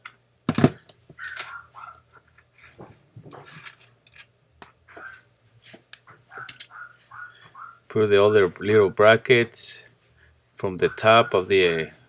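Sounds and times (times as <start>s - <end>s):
parts clicking and scraping: 0.0s - 7.6s.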